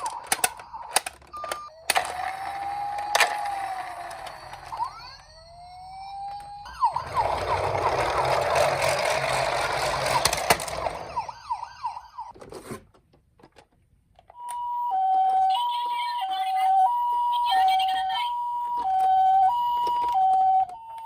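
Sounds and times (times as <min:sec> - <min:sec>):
falling wail siren: 0:00.0 - 0:12.3, 0:16.5 - 0:21.0
toy siren winding up: 0:00.0 - 0:12.4, 0:18.1 - 0:21.0
two-tone ambulance siren: 0:00.0 - 0:12.4, 0:14.4 - 0:21.0
loud clattering noise: 0:07.0 - 0:11.2.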